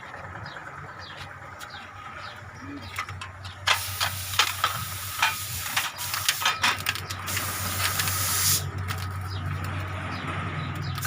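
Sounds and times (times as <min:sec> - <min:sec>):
loud air hiss: 0:03.7 - 0:06.5, 0:07.3 - 0:08.7.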